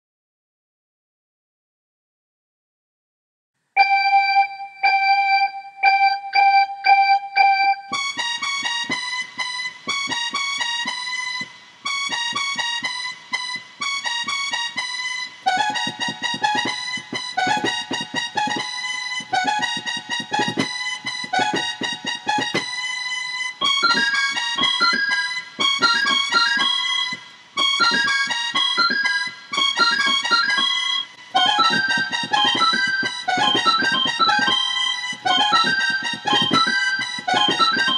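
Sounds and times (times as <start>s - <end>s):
repeated bell-like note: 3.8s - 8.0s
electronic keyboard melody with beat: 3.8s - 37.9s.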